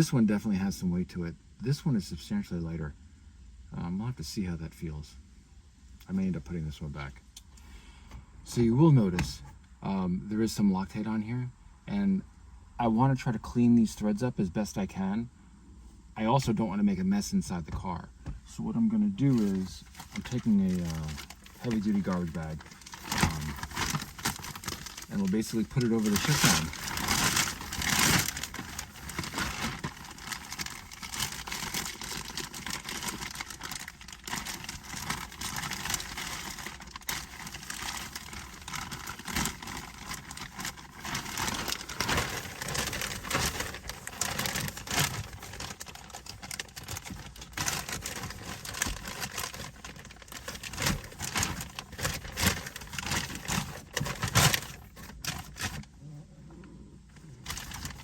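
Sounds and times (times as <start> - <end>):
plastic bag rustling: 19.2 - 55.9, 57.4 - 58.0.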